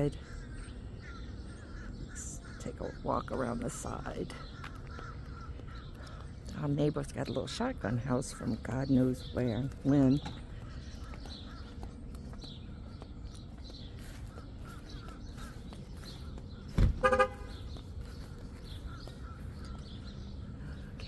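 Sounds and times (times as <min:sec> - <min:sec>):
low thump: 0:16.7 - 0:17.2
loud honk-like tones: 0:17.0 - 0:17.6.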